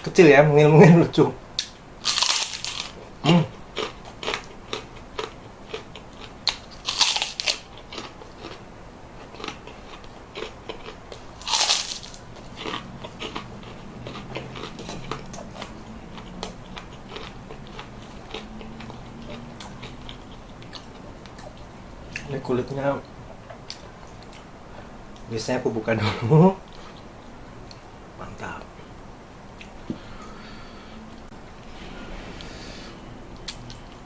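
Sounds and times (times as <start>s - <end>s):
crackers crunching: 1.6s - 22.4s
crackling chewing: 1.6s - 24.5s.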